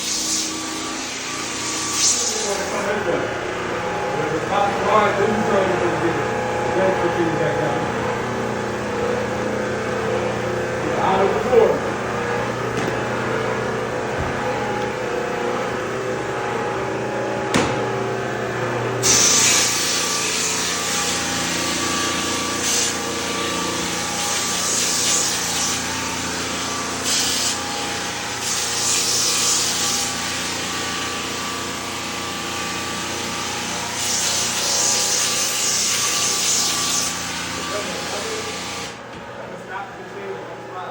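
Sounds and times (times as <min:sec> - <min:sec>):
sanding hiss against wood: 0:00.0 - 0:02.8, 0:19.0 - 0:21.2, 0:22.5 - 0:23.0, 0:27.0 - 0:29.9
floor sander motor hum: 0:00.0 - 0:40.9
knock: 0:17.5 - 0:17.9.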